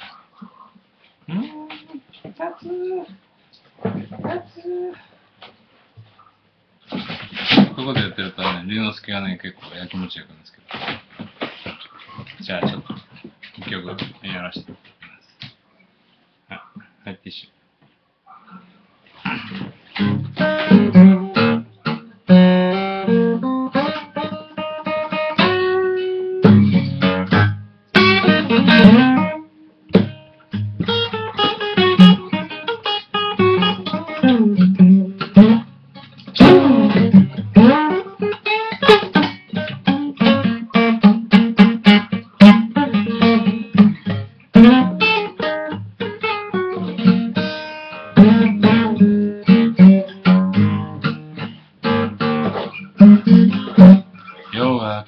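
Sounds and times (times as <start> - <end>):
solo blues guitar: 3.8 - 5.1, 18.6 - 54.9.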